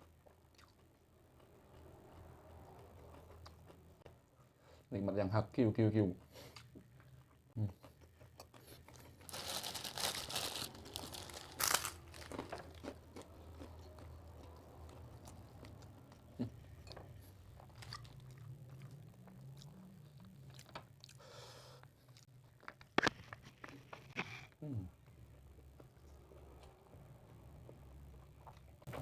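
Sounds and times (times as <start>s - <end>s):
crunching and chewing crispy fish: 6.5s - 16.2s.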